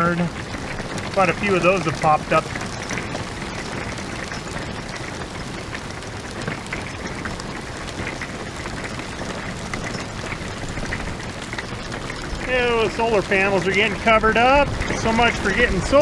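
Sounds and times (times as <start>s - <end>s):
hail pelting down: 0.0s - 16.0s.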